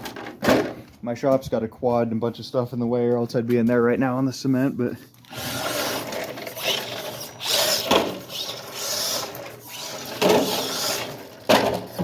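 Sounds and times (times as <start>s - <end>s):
rc car motor whirring: 5.3s - 11.4s.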